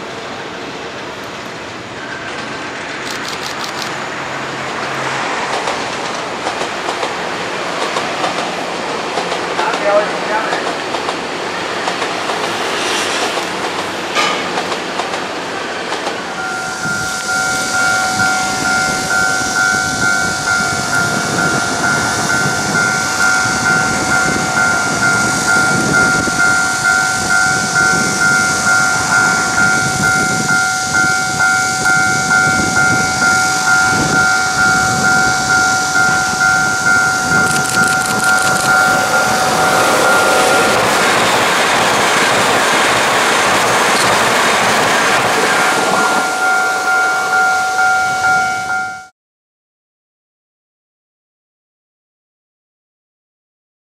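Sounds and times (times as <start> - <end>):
train wheels clattering: 10.5 - 16.3
pulsing ringing tone: 16.3 - 41.4, 45.8 - 49.1.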